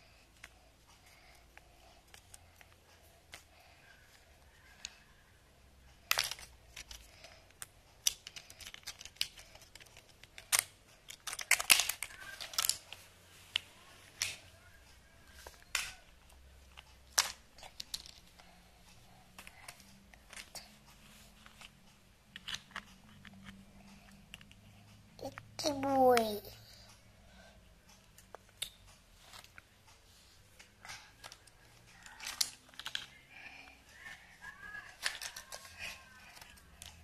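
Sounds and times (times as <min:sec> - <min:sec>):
plastic toy parts clicking: 0:06.0 - 0:14.5, 0:15.3 - 0:18.4, 0:19.4 - 0:20.6, 0:22.3 - 0:24.6, 0:31.2 - 0:33.2, 0:34.9 - 0:37.0.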